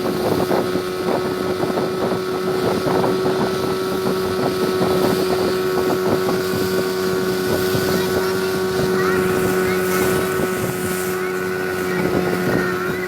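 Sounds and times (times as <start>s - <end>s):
boat motor running: 0.0s - 13.0s
wind noise on microphone: 0.0s - 13.0s.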